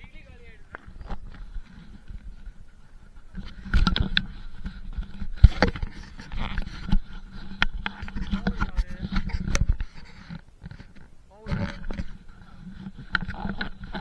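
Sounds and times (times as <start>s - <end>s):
footsteps climbing over rocks: 0.0s - 14.0s.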